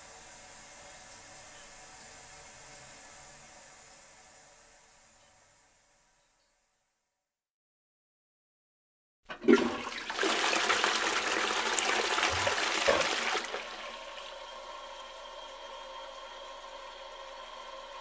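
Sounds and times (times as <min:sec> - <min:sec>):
toilet flush click: 0:09.3 - 0:18.0
toilet water rushing: 0:09.3 - 0:18.0.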